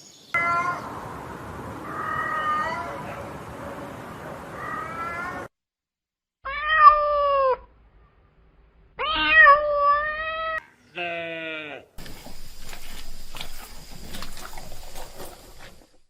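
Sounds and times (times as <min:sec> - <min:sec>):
cat meowing: 0:00.4 - 0:00.9, 0:01.8 - 0:03.2, 0:04.6 - 0:05.5, 0:06.5 - 0:07.7, 0:09.0 - 0:10.6.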